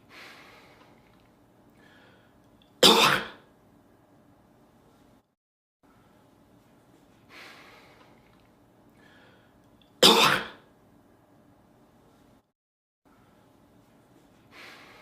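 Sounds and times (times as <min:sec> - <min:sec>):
soft breathy sound: 0:00.0 - 0:02.4, 0:05.9 - 0:09.6, 0:13.1 - 0:15.0
man coughing: 0:02.8 - 0:03.4, 0:10.0 - 0:10.6.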